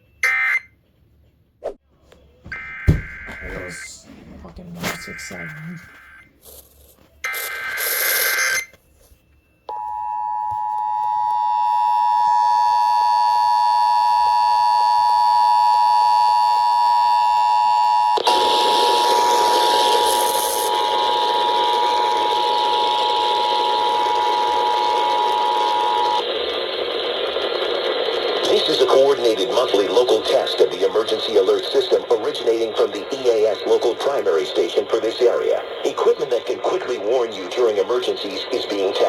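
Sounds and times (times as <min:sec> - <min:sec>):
radio static and hiss: 0:03.3 - 0:08.3, 0:25.1 - 0:39.0
data burst tones: 0:04.8 - 0:06.3, 0:07.2 - 0:08.7.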